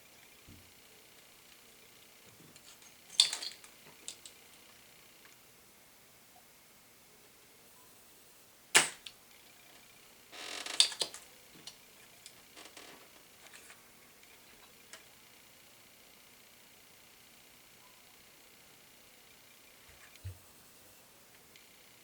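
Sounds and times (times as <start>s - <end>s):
desoldering pump snap: 8.8s - 9.2s.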